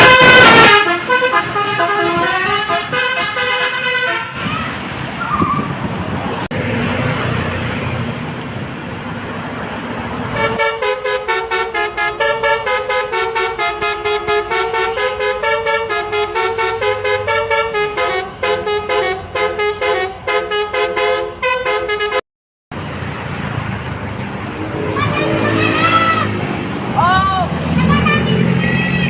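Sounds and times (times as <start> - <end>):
bus musical horn tune: 0.0 - 4.5, 10.3 - 22.2, 24.5 - 26.5
road traffic noise: 0.0 - 29.0.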